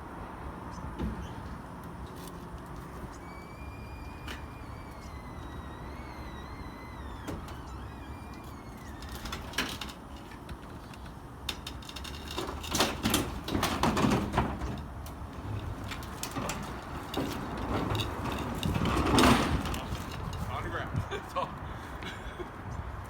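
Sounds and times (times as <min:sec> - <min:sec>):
toolbox rattling and scraping: 0:08.4 - 0:20.8.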